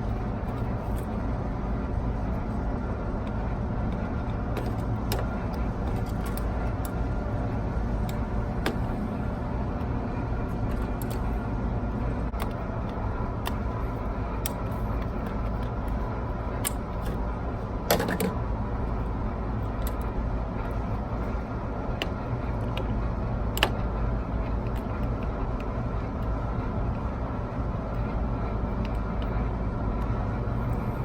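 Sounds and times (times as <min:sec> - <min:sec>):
low machinery hum: 0:00.0 - 0:31.0
parts clattering: 0:04.5 - 0:07.0, 0:17.8 - 0:18.4.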